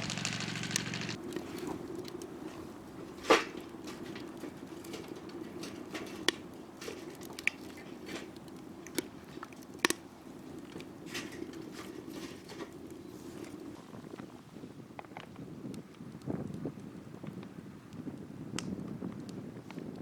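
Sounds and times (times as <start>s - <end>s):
campfire crackling: 0.0s - 20.0s
sharp pops of fire: 18.0s - 20.0s.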